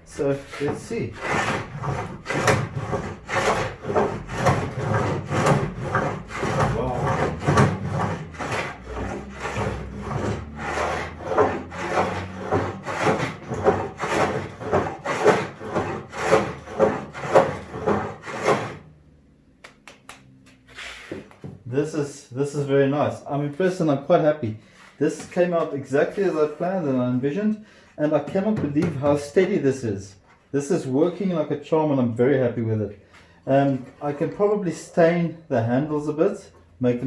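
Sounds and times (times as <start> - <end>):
hand saw cutting wood: 0.1 - 18.9.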